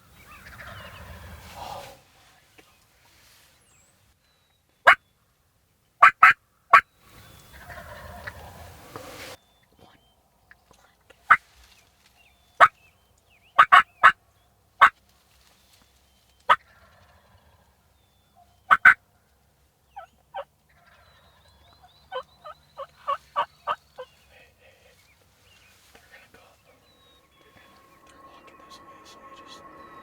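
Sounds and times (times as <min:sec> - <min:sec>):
turkeys gobbling: 0:00.2 - 0:02.0, 0:06.0 - 0:09.3, 0:13.6 - 0:14.2, 0:18.7 - 0:19.0, 0:20.0 - 0:24.4.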